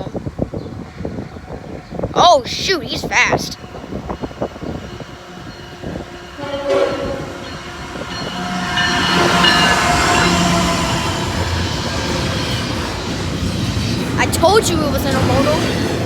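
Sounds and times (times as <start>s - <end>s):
train rumble: 0.0s - 16.0s
locomotive horn chord: 5.2s - 12.9s.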